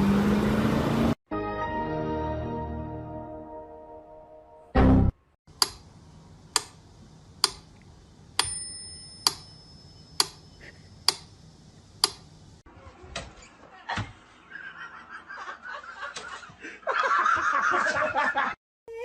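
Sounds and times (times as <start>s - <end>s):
thin high ringing tone: 8.4s - 11.0s.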